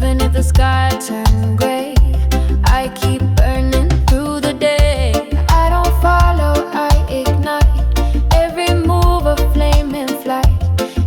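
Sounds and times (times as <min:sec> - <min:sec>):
deep bass line: 0:00.0 - 0:11.0
reggae music: 0:00.0 - 0:11.0
drum hits: 0:01.3 - 0:09.2.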